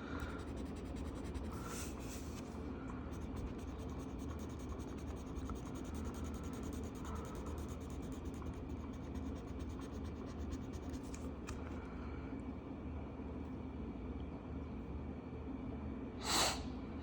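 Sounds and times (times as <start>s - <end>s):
steady low hum: 0.0s - 17.0s
marker scribbling on paper: 0.2s - 2.5s, 3.2s - 11.2s.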